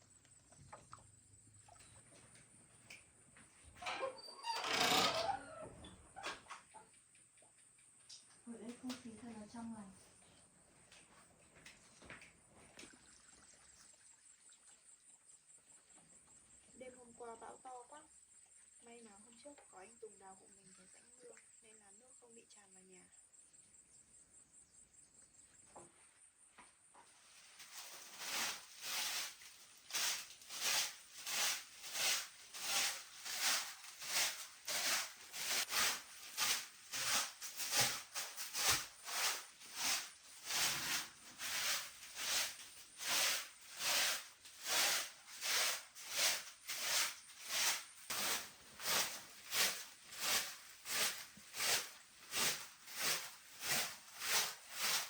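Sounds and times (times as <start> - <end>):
scratchy swishing brush strokes: 27.4 - 55.0.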